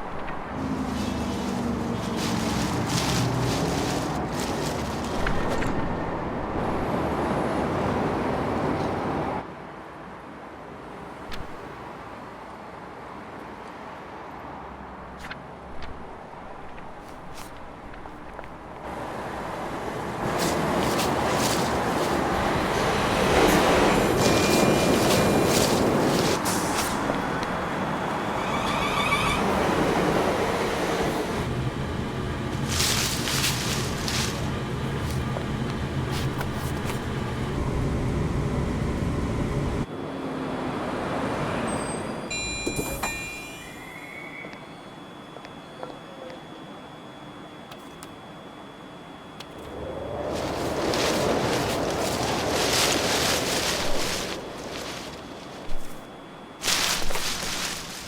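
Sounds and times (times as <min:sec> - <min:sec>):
low engine hum: 0:00.0 - 0:09.4, 0:29.5 - 0:39.9, 0:49.6 - 0:58.0
loud dense vehicle noise: 0:00.0 - 0:10.0, 0:10.6 - 0:43.8, 0:49.6 - 0:58.0
street traffic: 0:00.0 - 0:46.8, 0:49.4 - 0:58.0
passing vehicles rushing: 0:00.4 - 0:05.2.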